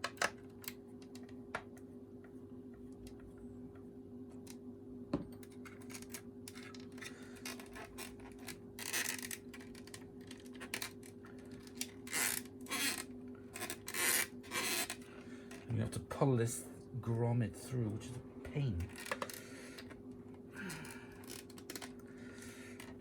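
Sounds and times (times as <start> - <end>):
scraping and rattling of plastic parts: 5.4 - 15.7, 18.8 - 19.9, 20.6 - 23.0.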